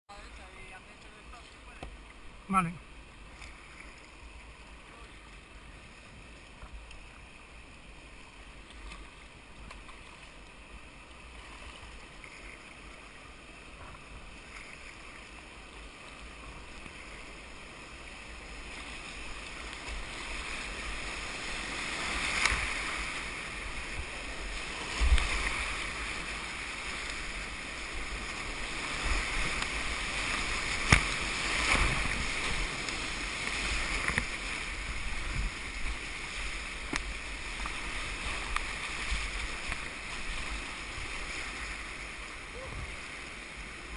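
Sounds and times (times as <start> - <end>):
whitewater rushing: 17.9 - 43.9
sharp water splashes: 28.2 - 34.8.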